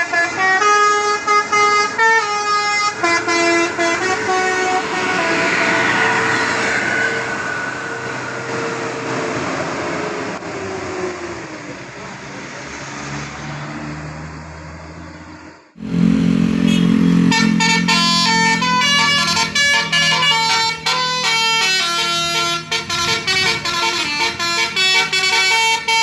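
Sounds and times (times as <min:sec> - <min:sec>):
bus musical air horn: 0:00.0 - 0:09.2, 0:15.8 - 0:26.0
road traffic noise: 0:00.0 - 0:26.0
engine note dropping in pitch: 0:15.8 - 0:23.8.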